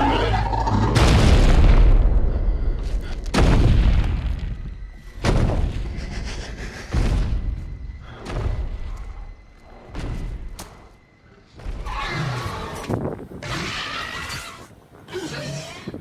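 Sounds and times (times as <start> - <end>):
deep booms: 0.0 - 8.9.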